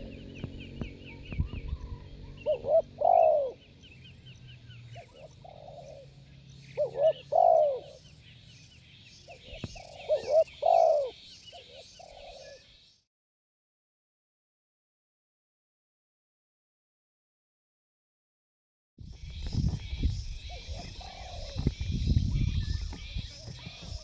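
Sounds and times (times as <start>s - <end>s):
dove cooing: 0.0s - 8.2s, 9.2s - 12.8s, 19.2s - 24.0s
faint high rhythmic chirping: 19.1s - 24.0s.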